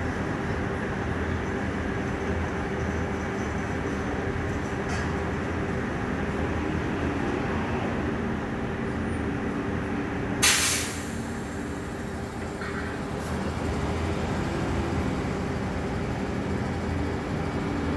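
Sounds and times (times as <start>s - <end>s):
machinery humming: 11.0s - 17.9s.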